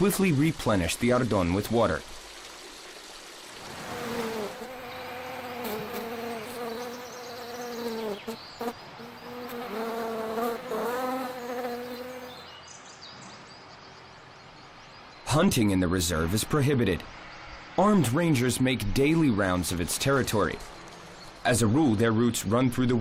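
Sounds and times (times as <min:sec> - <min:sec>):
flying insect buzzing: 0:03.7 - 0:12.5.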